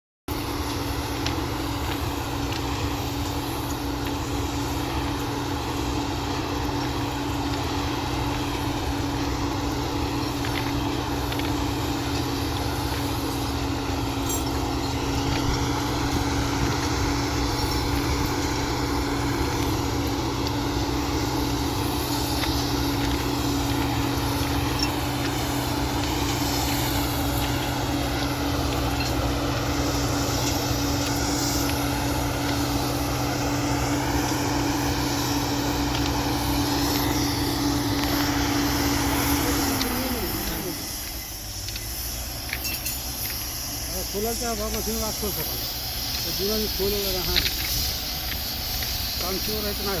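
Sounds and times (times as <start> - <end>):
diesel engine running steadily: 0.3 - 50.0.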